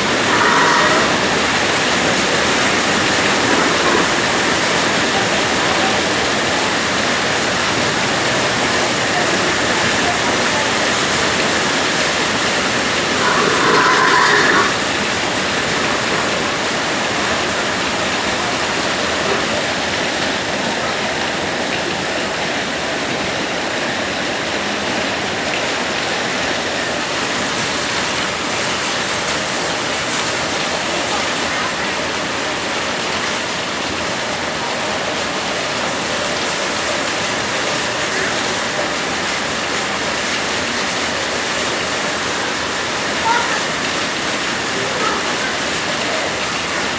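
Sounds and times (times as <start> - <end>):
heavy rain pouring: 0.0 - 46.9.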